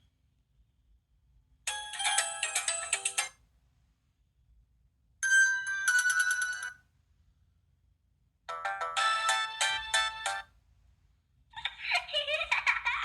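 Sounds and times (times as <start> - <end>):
polyphonic phone ringtone: 1.7 - 3.3, 5.2 - 6.8, 8.5 - 10.4.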